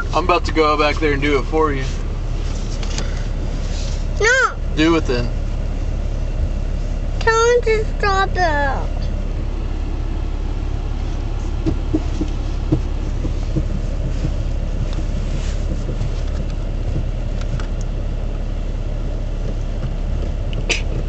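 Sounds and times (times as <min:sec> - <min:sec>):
car engine idling: 0:00.0 - 0:21.0
faint clicks and knocks: 0:11.6 - 0:17.9.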